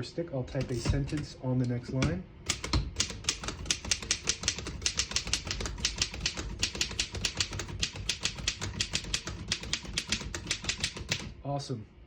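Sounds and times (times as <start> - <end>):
typewriter typing: 2.5 - 11.4.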